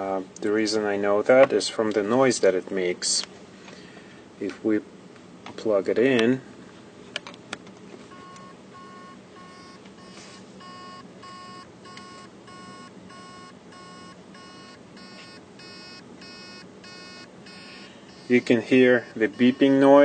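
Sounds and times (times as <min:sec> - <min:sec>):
hard drive beeping faintly: 0:08.1 - 0:20.0.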